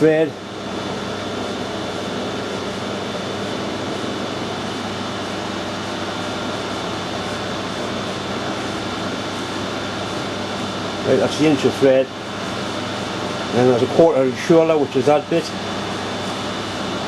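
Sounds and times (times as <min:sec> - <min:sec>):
metal lathe humming: 0:00.0 - 0:17.0.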